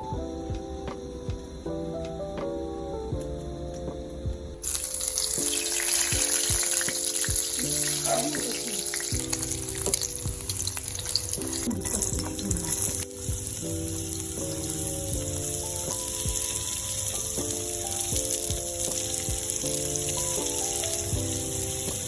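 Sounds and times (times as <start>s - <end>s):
background music: 0.0s - 22.0s
loud steady hiss: 4.6s - 22.0s.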